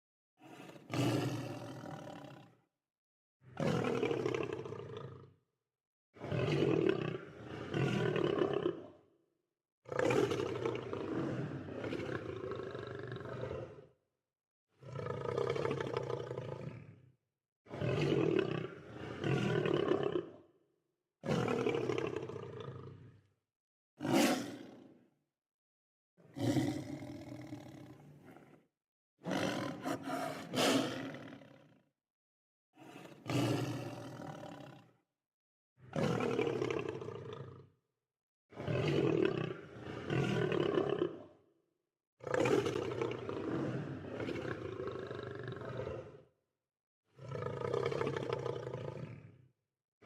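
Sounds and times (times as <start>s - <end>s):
lion roaring and growling: 26.4s - 28.6s, 29.2s - 31.7s.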